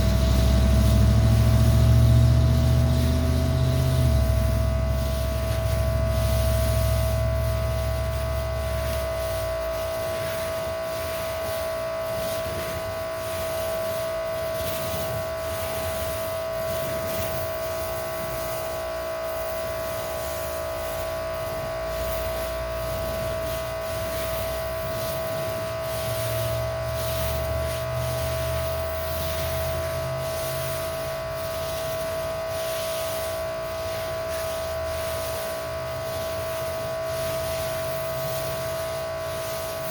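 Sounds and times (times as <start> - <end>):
low rumble: 0.0 - 39.2
pressure washer whining: 0.0 - 39.9.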